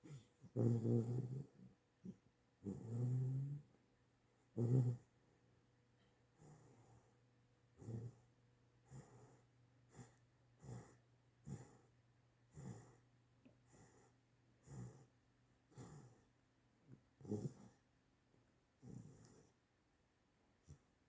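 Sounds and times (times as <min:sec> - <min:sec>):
puppy snoring: 0:00.0 - 0:03.8, 0:04.5 - 0:05.2, 0:06.4 - 0:07.1, 0:07.8 - 0:11.9, 0:12.5 - 0:13.0, 0:13.6 - 0:16.3, 0:17.2 - 0:17.8, 0:18.8 - 0:19.6.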